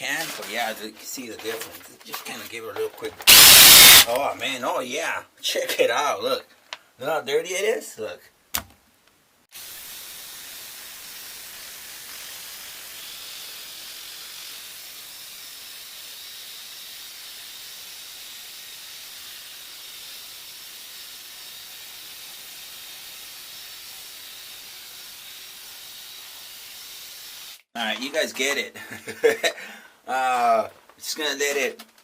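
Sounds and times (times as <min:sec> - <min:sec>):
shower water spraying: 0:03.3 - 0:04.1, 0:09.5 - 0:27.7.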